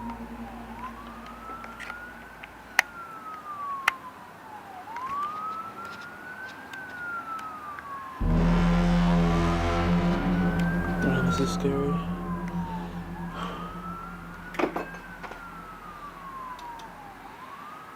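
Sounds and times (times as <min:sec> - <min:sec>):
loud low drone: 0:00.0 - 0:03.0, 0:08.2 - 0:17.3
siren wailing: 0:00.0 - 0:03.0, 0:08.2 - 0:17.3.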